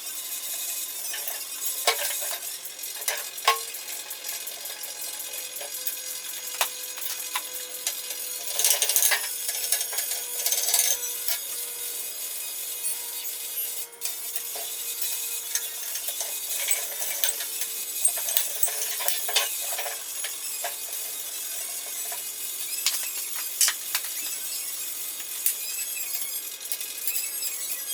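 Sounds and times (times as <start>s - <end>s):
metal tools clinking: 1.1s - 11.0s, 14.5s - 24.6s.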